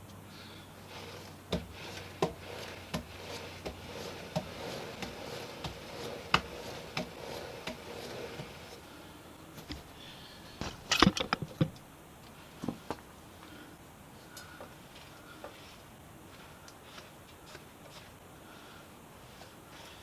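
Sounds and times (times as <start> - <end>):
clicks and knocks on motorcycle chain: 10.9 - 11.7.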